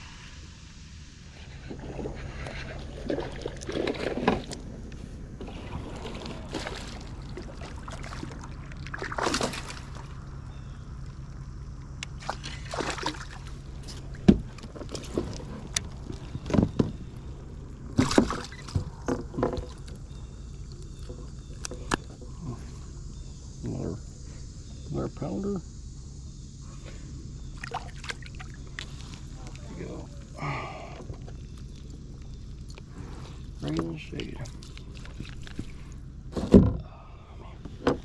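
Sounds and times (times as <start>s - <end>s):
steady low hum: 0.0s - 38.0s
water sloshing and splashing: 1.4s - 10.5s, 12.0s - 22.3s, 27.5s - 30.3s, 31.0s - 36.8s.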